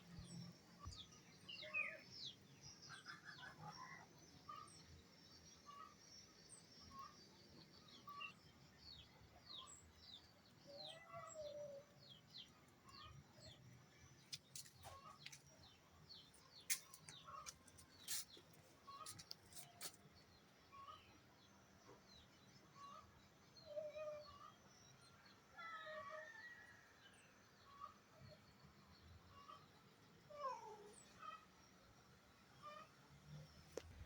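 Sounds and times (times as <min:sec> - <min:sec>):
small birds chirping: 0:00.0 - 0:21.1.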